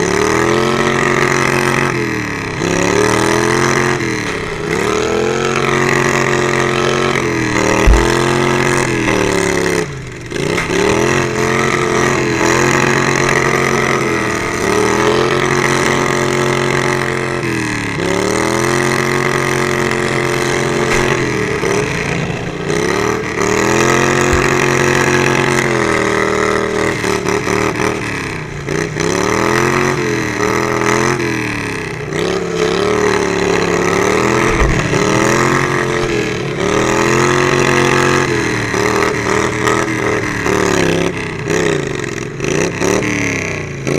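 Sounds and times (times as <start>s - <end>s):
lawnmower engine racing: 0.0s - 43.9s
short low thumps: 7.7s - 9.4s.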